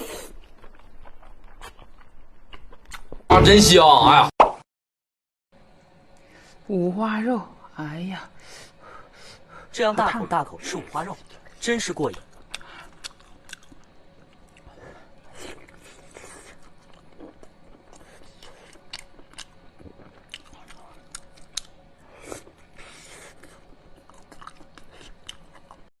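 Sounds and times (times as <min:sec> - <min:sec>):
person biting and chewing: 0:00.0 - 0:03.3, 0:12.4 - 0:14.7.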